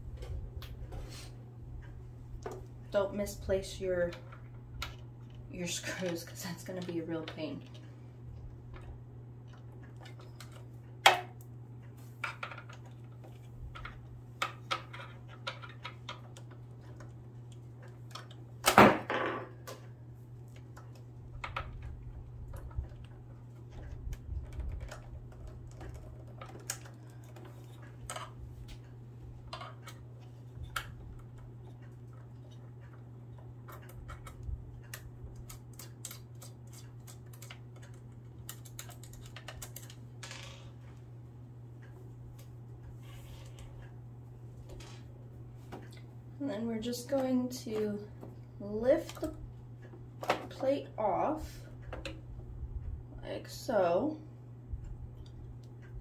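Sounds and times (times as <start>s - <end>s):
steady low hum: 0.0s - 56.0s
screwdriver clicking and tapping: 33.7s - 40.0s.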